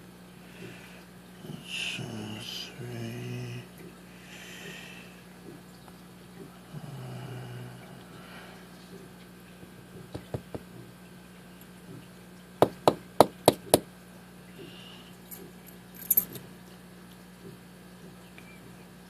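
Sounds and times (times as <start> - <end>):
metal parts tapping: 16.0 - 16.4
metallic clink: 16.0 - 16.4.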